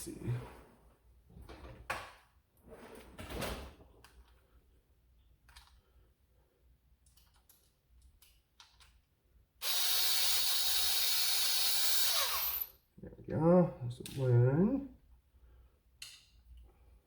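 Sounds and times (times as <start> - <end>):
small parts clicking: 7.0 - 9.2
electric screwdriver whining: 9.6 - 12.7.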